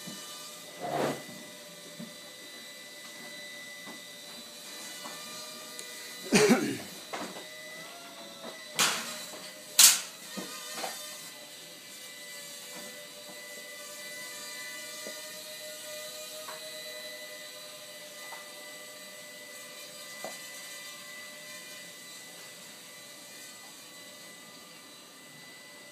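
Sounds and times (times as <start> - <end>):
small electric motors whining: 0.0 - 25.9.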